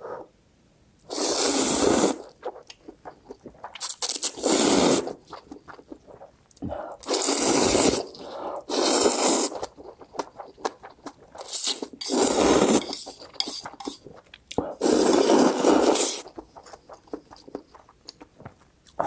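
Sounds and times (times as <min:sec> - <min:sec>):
loud noodle slurps: 0:01.1 - 0:06.2, 0:07.0 - 0:10.7, 0:11.4 - 0:17.6
wet chewing clicks: 0:02.3 - 0:04.4, 0:05.1 - 0:06.6, 0:09.5 - 0:11.9, 0:16.0 - 0:19.0.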